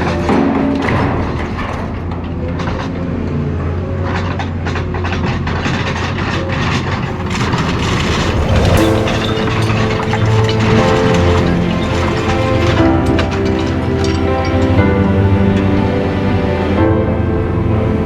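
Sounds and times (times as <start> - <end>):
metal crunching and clanking: 6.9 - 14.7
low diesel engine drone: 6.9 - 18.0.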